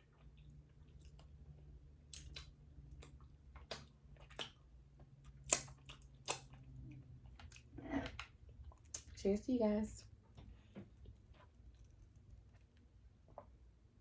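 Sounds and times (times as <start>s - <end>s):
wet chewing clicks and smacks: 0.0s - 9.2s
faint low hum: 0.0s - 14.0s.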